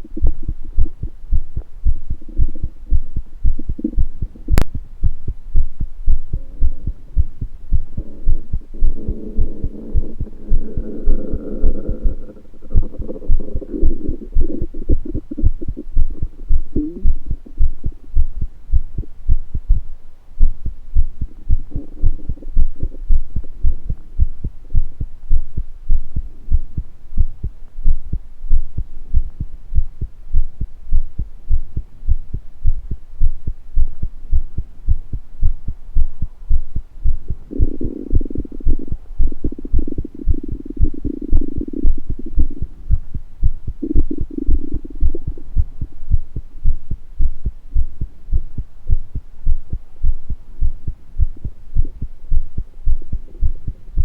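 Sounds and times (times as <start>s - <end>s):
heartbeat thumps: 0.0s - 54.0s
stomach gurgles: 7.8s - 18.3s, 21.2s - 24.1s, 37.3s - 45.9s.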